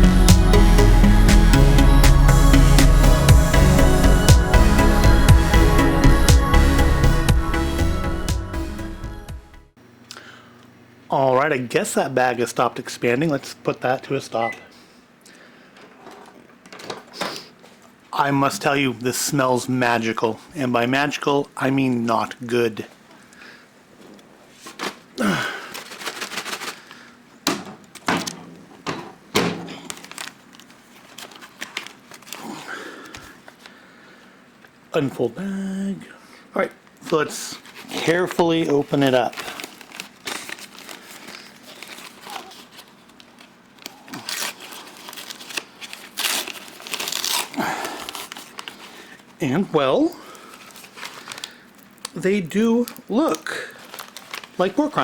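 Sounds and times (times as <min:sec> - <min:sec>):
paper bag crinkling: 0:24.5 - 0:27.2, 0:27.8 - 0:33.8, 0:37.0 - 0:55.0
handling clicks and knocks: 0:27.4 - 0:30.2.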